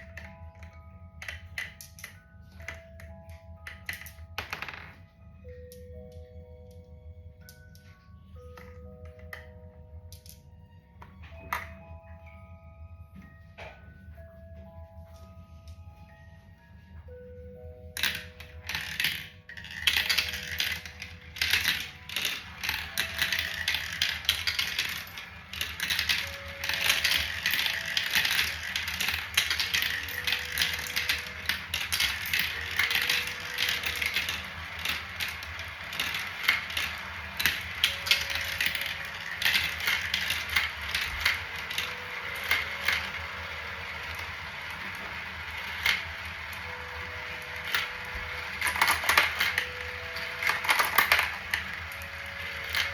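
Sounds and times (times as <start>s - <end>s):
marbles rolling and clattering: 0.0s - 5.8s, 17.9s - 52.9s.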